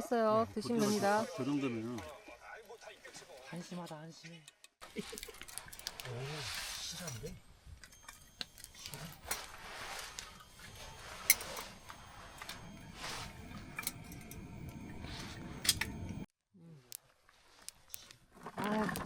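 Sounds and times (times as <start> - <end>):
utensils clinking on dishes: 4.8 - 16.3.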